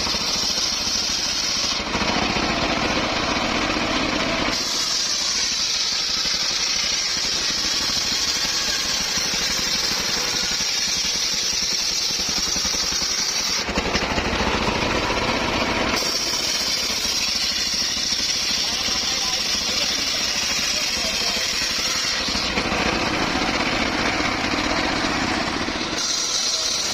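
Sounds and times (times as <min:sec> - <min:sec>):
circular saw blade whine: 0:00.0 - 0:26.9
engine rumble: 0:18.6 - 0:26.9.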